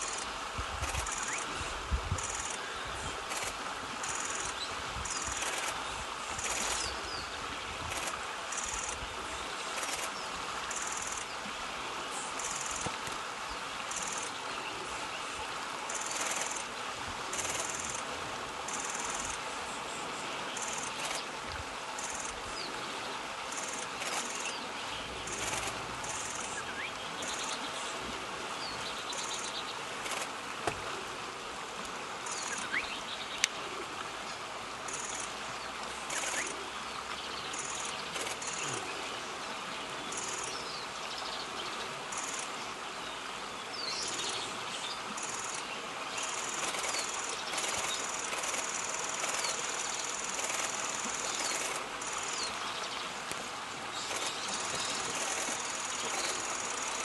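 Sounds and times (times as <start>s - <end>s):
insects trilling: 2.2s - 2.7s, 3.3s - 5.8s, 10.7s - 11.3s, 13.9s - 14.4s, 15.9s - 16.7s, 17.3s - 18.1s, 34.9s - 35.3s, 36.1s - 36.6s, 45.2s - 52.6s, 54.0s - 57.0s.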